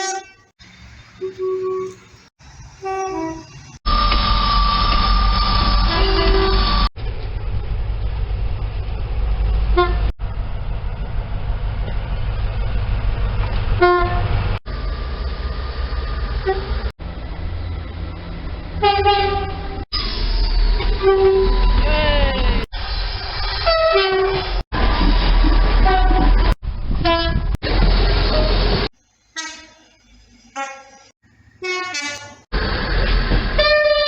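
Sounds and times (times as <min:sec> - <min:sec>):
heavy train rumble: 0:00.0 - 0:34.0
train horn toots: 0:01.2 - 0:02.1, 0:02.8 - 0:03.6, 0:05.6 - 0:06.9, 0:09.8 - 0:10.1, 0:13.8 - 0:14.4, 0:18.8 - 0:19.8, 0:29.4 - 0:29.9, 0:30.6 - 0:32.4, 0:33.6 - 0:34.0.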